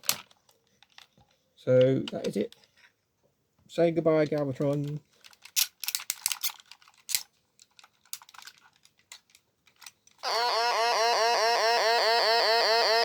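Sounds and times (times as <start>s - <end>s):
plastic toy clicks: 4.4s - 13.0s
electronic warbling tone: 10.2s - 13.0s.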